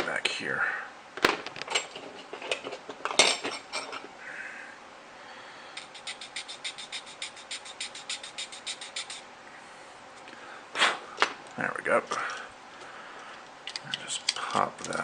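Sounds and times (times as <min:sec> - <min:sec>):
plastic parts clicking and tapping: 0:13.6 - 0:15.0.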